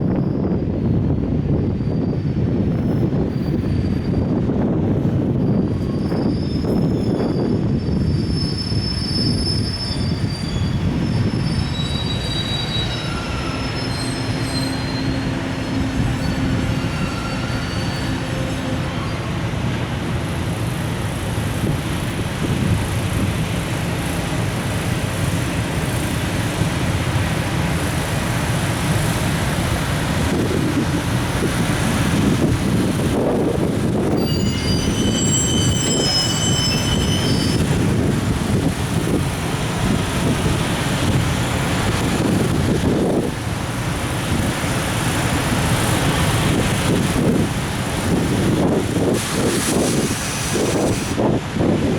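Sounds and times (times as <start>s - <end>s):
train wheels rumbling on rails: 0.0s - 51.9s
high wheel squeals: 5.6s - 19.4s, 33.9s - 38.6s.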